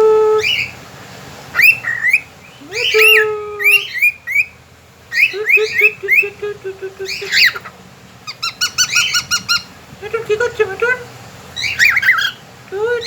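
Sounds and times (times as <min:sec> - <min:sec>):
cockatiel whistling and chirping: 0:01.6 - 0:06.2, 0:08.3 - 0:09.7, 0:11.6 - 0:12.4.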